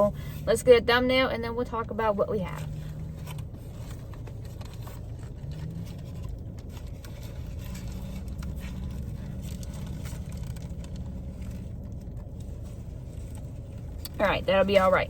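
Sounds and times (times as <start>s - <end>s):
low hum: 0.0s - 15.0s
food packaging rustling: 2.7s - 14.1s.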